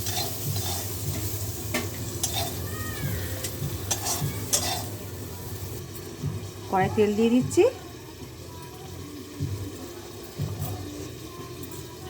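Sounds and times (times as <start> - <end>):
metal spatula scraping a pan: 0.0 - 5.8
oil sizzling: 0.0 - 12.0.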